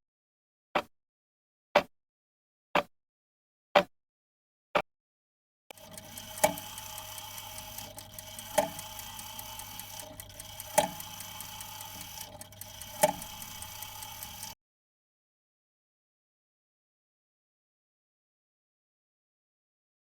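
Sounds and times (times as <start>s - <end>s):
clock ticking: 5.7s - 14.6s.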